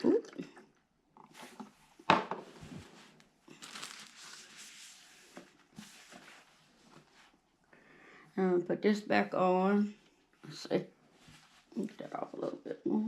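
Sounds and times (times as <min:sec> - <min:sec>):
crinkly rustling: 0:02.6 - 0:07.4.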